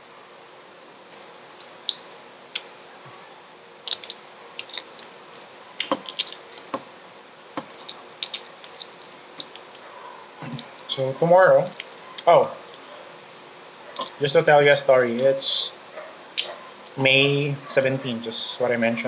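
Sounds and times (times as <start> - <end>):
eggshell clicking: 3.8 - 6.8, 7.6 - 9.8.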